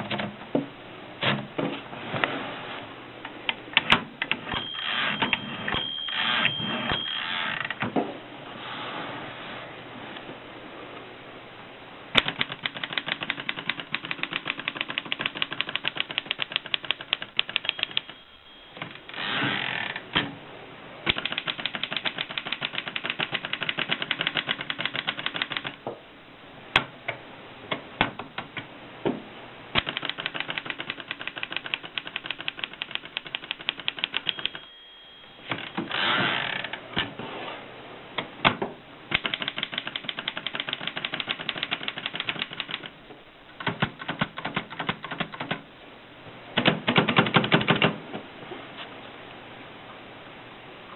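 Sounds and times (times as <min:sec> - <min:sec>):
typewriter margin bell: 0:04.5 - 0:07.6, 0:17.4 - 0:19.1, 0:33.6 - 0:35.8
typewriter keystrokes: 0:12.2 - 0:18.2, 0:21.1 - 0:25.8, 0:29.8 - 0:34.6, 0:39.1 - 0:43.0, 0:43.6 - 0:45.6, 0:46.6 - 0:48.0
typewriter carriage return: 0:12.2 - 0:19.5, 0:21.1 - 0:25.8, 0:29.8 - 0:34.7, 0:39.1 - 0:43.0, 0:43.6 - 0:45.6, 0:46.6 - 0:48.0.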